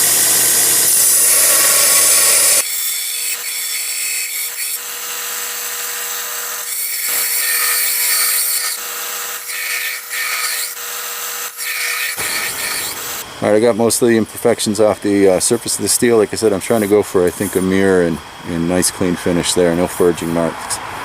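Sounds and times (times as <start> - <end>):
power grinder grinding metal: 0.0 - 20.5.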